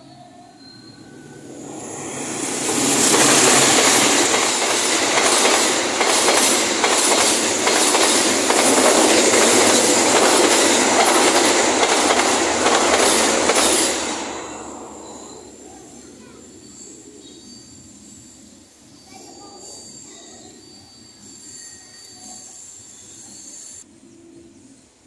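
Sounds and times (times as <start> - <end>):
train passing roar: 0.0 - 19.3
train wheels clacking on rails: 0.9 - 17.0.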